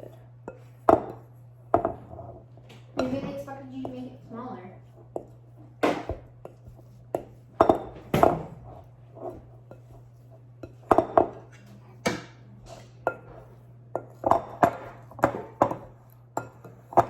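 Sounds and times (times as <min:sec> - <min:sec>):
low steady hum: 0:00.0 - 0:17.0
dishes and utensils clattering: 0:01.7 - 0:04.0.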